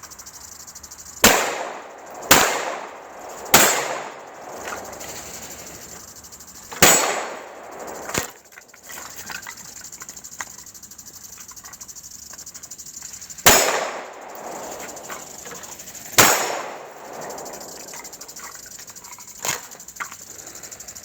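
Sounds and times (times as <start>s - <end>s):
lawn sprinklers spraying water: 0.0s - 21.0s
pistol shots: 1.2s - 5.1s, 6.7s - 8.4s, 13.4s - 15.3s, 16.2s - 17.9s.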